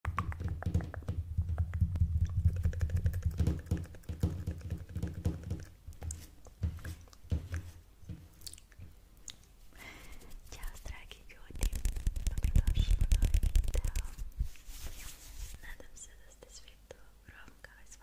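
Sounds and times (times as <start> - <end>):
muffled thuds: 0.2 - 8.4.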